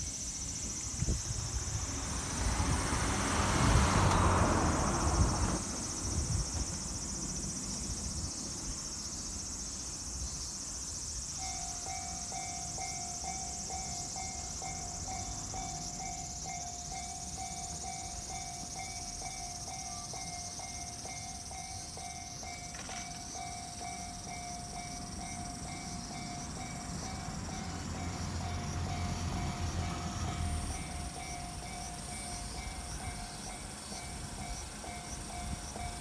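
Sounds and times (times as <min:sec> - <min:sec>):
level crossing warning bell: 0:11.2 - 0:36.0.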